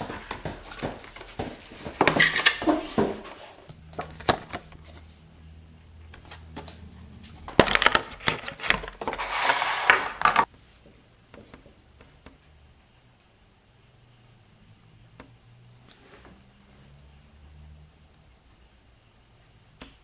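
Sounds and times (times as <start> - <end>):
packaging crinkling rustles: 6.2 - 10.5.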